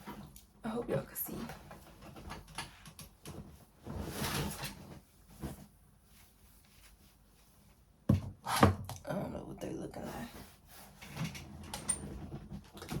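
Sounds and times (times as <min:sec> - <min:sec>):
rustling and handling noises: 0:01.2 - 0:08.1.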